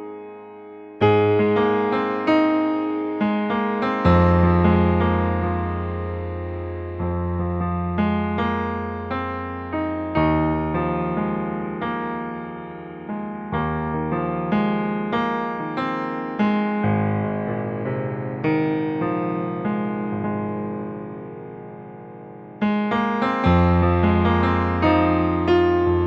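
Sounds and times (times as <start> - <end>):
slow sad piano music: 0.0 - 26.0.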